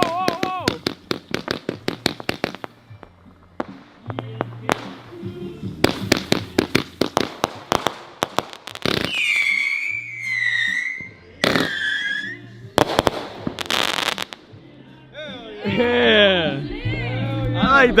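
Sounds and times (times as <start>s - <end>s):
firework bangs: 0.0s - 2.8s, 3.6s - 14.4s
shrill firework whistles: 8.9s - 12.5s.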